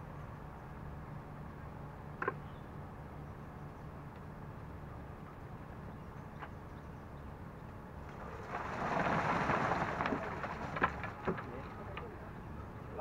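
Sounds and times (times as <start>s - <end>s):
low engine hum: 0.0s - 13.0s
wet concrete pouring: 8.1s - 11.8s.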